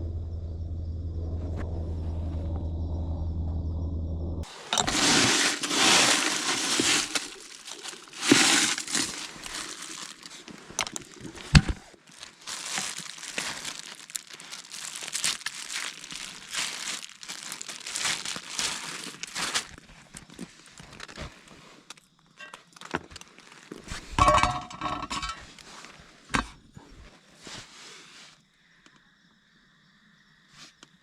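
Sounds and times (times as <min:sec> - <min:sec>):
crinkly rustling: 0:04.4 - 0:26.2.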